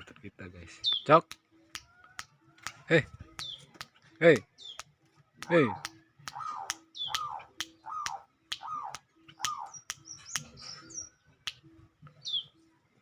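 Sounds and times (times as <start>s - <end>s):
songbird clicks and calls: 0.1s - 12.6s
high falling bird chirps: 0.7s - 1.2s, 3.2s - 12.6s.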